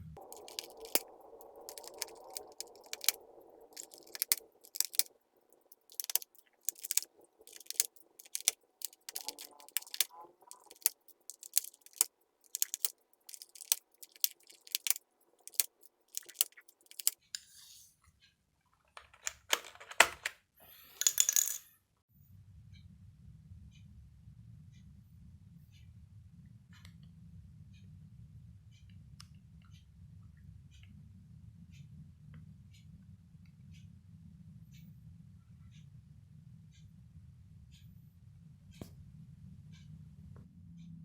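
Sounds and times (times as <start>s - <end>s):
plastic keycaps clacking: 0.2s - 17.2s, 19.0s - 20.3s.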